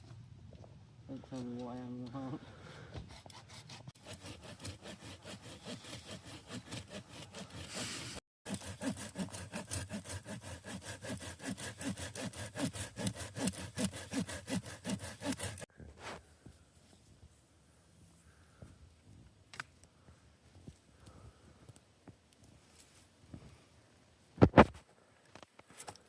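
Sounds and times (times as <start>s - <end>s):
hand saw cutting wood: 3.0s - 15.7s.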